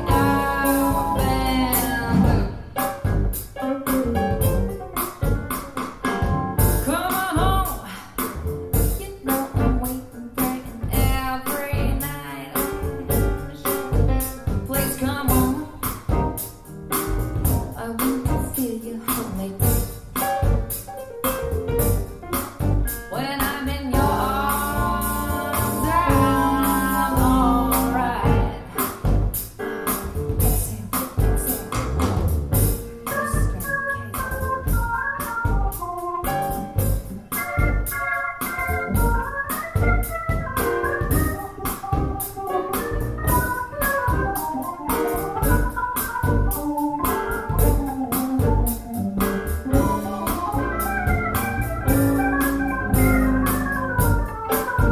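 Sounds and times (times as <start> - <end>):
person singing: 0.0 - 2.6, 23.1 - 28.8, 33.1 - 34.7
song through speakers: 0.0 - 2.9, 23.1 - 28.8
steady drum beat: 0.0 - 54.9
organ-like keyboard: 33.7 - 36.8, 37.4 - 54.9.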